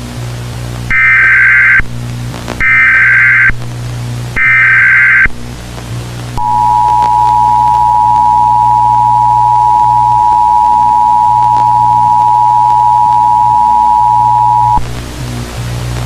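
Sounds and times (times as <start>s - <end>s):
low hum: 0.0s - 16.0s
screeching data tones: 0.9s - 1.9s, 2.6s - 3.6s, 4.4s - 5.4s, 6.4s - 14.8s
two-tone attention signal: 6.4s - 14.8s.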